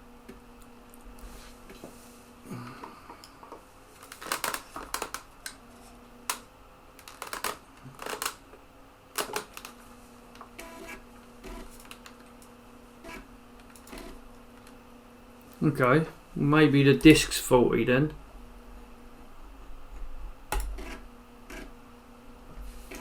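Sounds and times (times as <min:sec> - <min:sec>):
faint steady hum: 0:00.0 - 0:23.0
floppy drive clicking: 0:20.5 - 0:21.7.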